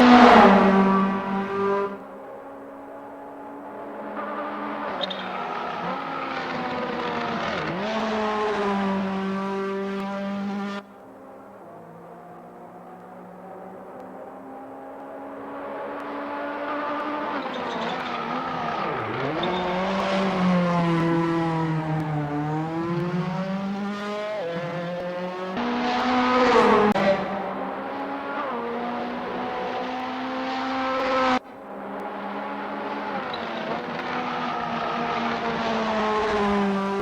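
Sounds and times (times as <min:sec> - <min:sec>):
racing car engines passing: 0:00.0 - 0:37.0.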